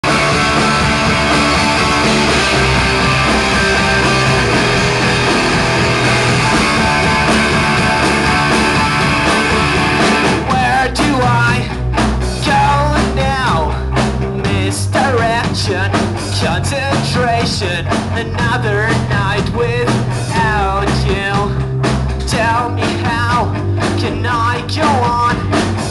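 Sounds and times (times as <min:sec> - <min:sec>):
sharp drum hits: 0:00.0 - 0:10.5
bending lead guitar line: 0:00.0 - 0:25.9
live rock band playing: 0:00.0 - 0:25.9.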